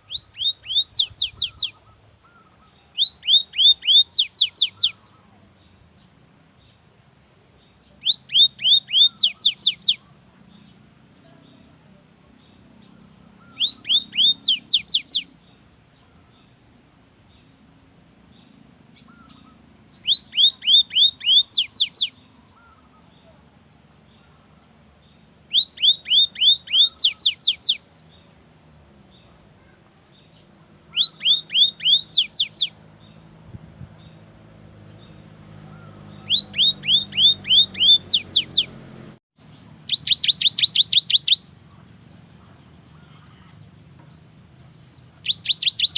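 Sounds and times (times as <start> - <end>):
bird singing high sweeping notes: 0.0 - 5.0, 8.0 - 10.0, 13.3 - 15.3, 19.0 - 23.0, 25.5 - 27.8, 30.9 - 33.4, 34.8 - 38.9, 39.8 - 41.5, 45.3 - 45.9.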